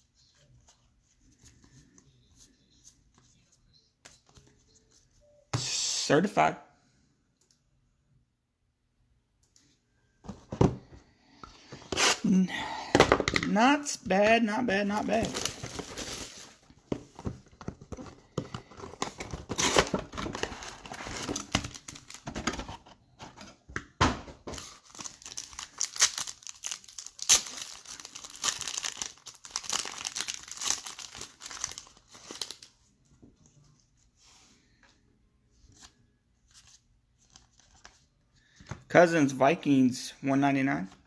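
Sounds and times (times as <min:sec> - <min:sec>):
wrapper tearing and crinkling: 0:15.0 - 0:16.6, 0:24.6 - 0:32.7
cards being handled: 0:35.6 - 0:38.8.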